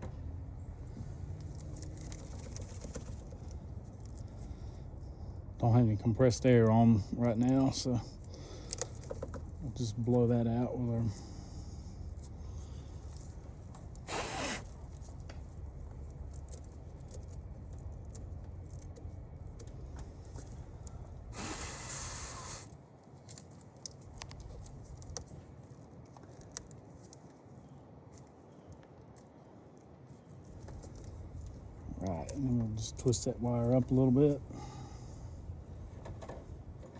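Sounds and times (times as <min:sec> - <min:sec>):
hissing air blasts: 0:14.0 - 0:14.7, 0:21.3 - 0:22.7.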